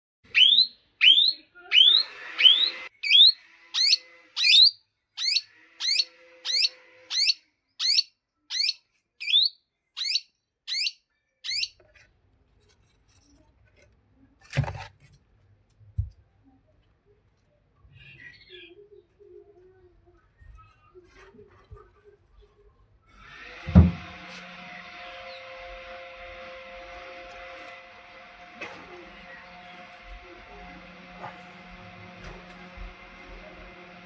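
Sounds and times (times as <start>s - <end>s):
parakeet rising whistles: 0.4s - 4.7s
thump: 23.6s - 24.2s.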